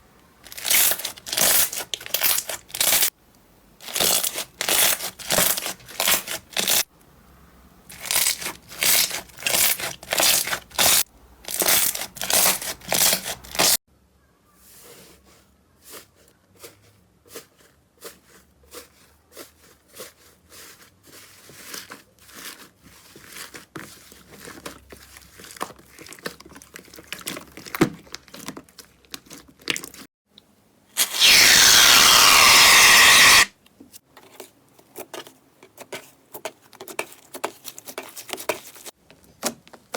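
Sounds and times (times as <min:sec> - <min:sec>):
slime crackling and crunching: 0:00.5 - 0:03.1, 0:03.8 - 0:06.8, 0:07.9 - 0:13.8, 0:31.0 - 0:33.5
loud steady hiss: 0:31.0 - 0:33.5.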